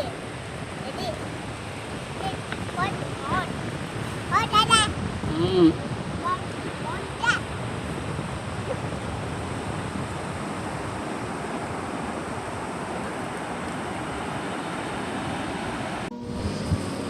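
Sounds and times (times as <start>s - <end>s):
steady rushing noise: 0.0s - 17.0s
steady tones: 16.1s - 17.0s.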